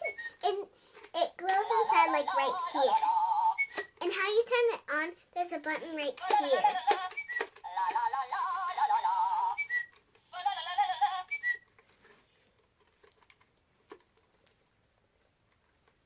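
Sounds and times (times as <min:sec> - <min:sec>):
electronic toy bird song: 0:02.9 - 0:03.9, 0:06.6 - 0:11.6.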